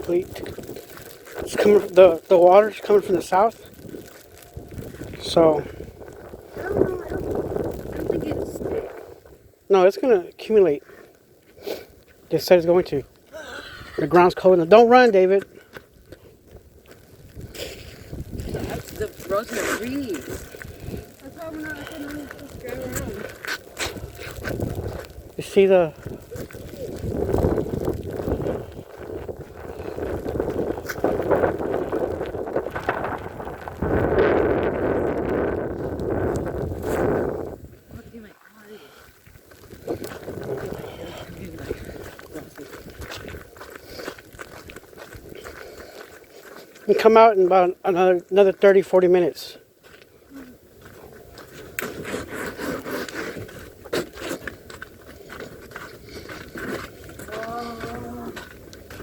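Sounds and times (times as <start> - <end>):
footsteps crunching through snow: 0.0 - 9.1, 14.1 - 38.0, 39.0 - 48.9, 49.7 - 59.0
wind buffeting microphone: 0.0 - 9.6, 15.9 - 38.4, 39.0 - 46.7
short voice-like call: 57.3 - 58.4.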